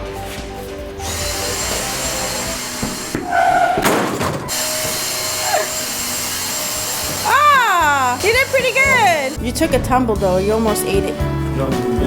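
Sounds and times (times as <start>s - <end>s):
vacuum cleaner running: 1.0s - 3.3s, 4.4s - 9.6s
thump: 2.8s - 4.5s.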